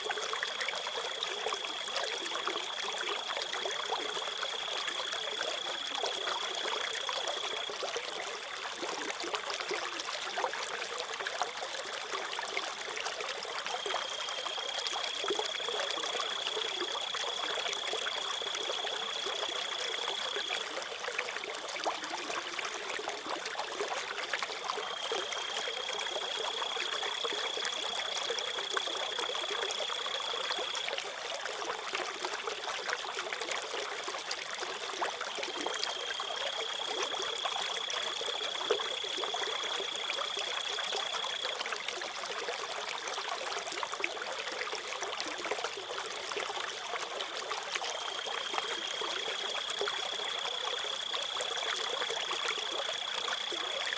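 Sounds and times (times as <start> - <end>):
water trickling like a stream: 0.0 - 53.9
cricket trilling: 35.5 - 41.6.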